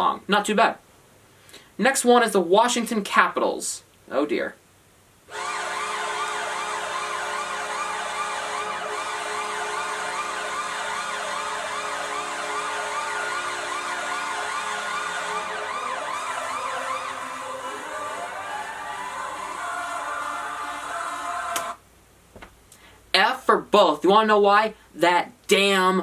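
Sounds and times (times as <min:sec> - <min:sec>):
goal horn blast: 0:05.3 - 0:21.8
siren wailing: 0:05.3 - 0:21.8.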